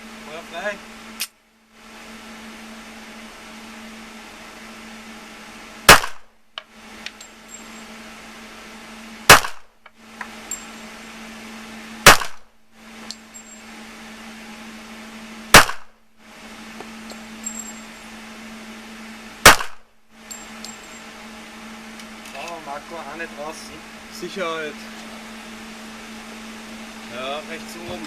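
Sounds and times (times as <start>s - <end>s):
handgun shots: 5.9s - 6.3s, 9.3s - 9.7s, 12.0s - 12.5s, 15.5s - 15.9s, 19.4s - 19.8s
faint metallic clinks: 7.2s - 7.9s, 10.4s - 10.9s, 13.1s - 13.7s, 17.0s - 18.1s, 20.2s - 21.2s.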